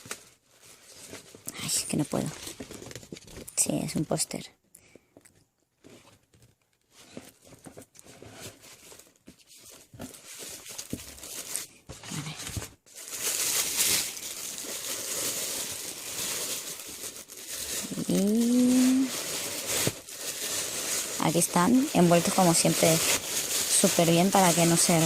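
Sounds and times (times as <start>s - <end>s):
paper crinkling and tearing: 6.9s - 25.0s.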